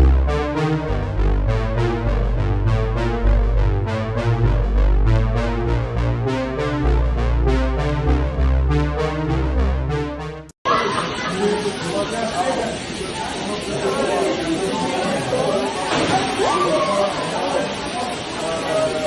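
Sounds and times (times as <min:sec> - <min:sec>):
electronic music with synth chords: 0:00.0 - 0:10.5.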